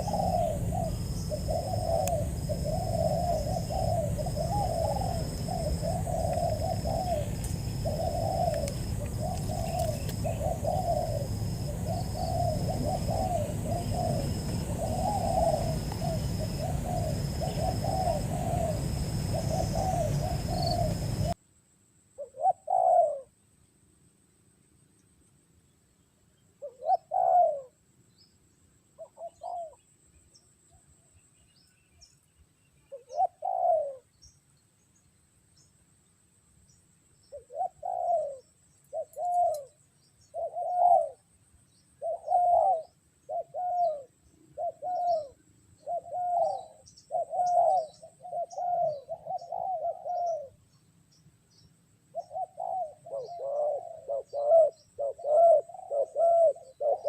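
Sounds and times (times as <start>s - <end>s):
doves cooing: 0.0s - 21.4s, 22.2s - 23.3s, 26.6s - 27.8s, 29.0s - 29.8s, 32.9s - 34.1s, 37.3s - 41.3s, 42.0s - 50.6s, 52.1s - 57.0s.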